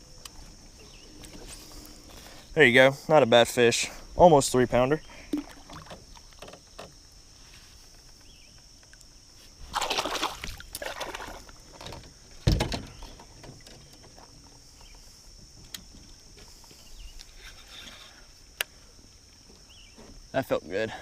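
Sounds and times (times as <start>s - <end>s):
insect chirr: 0.0s - 21.0s
pond water splashing: 5.1s - 6.4s, 9.6s - 11.9s.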